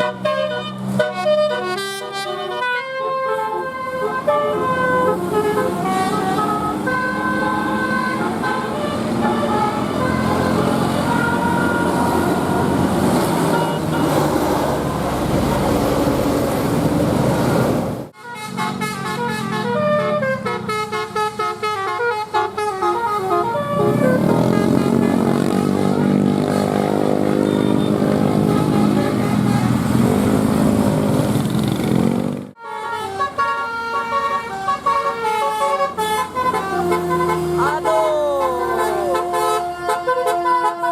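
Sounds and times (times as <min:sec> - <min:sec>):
bus multi-tone air horns: 0:00.0 - 0:15.7, 0:18.1 - 0:30.6, 0:32.6 - 0:40.9
bus engine: 0:00.0 - 0:40.9.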